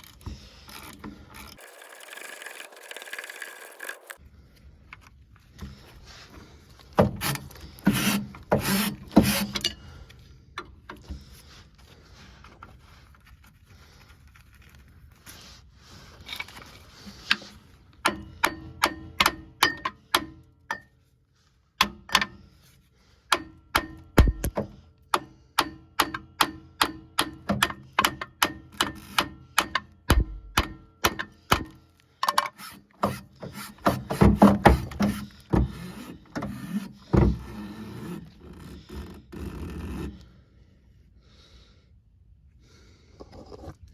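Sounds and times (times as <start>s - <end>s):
tool knocks: 23.8s - 24.7s.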